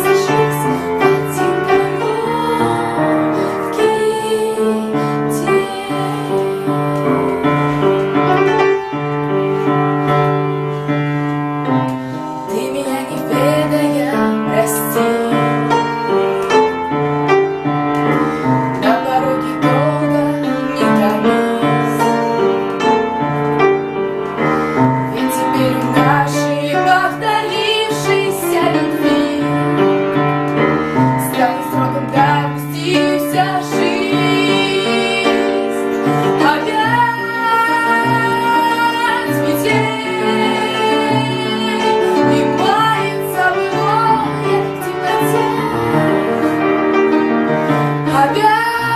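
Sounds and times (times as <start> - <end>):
woman singing with vibrato: 0.0 - 7.8, 12.5 - 16.4, 18.4 - 22.3, 25.1 - 30.1, 31.0 - 46.7, 48.0 - 48.9
piano accompaniment: 0.0 - 48.9.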